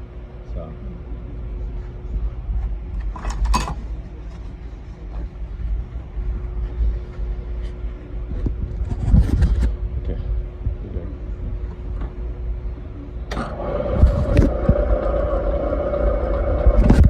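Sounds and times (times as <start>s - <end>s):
milling machine humming: 9.8s - 17.0s.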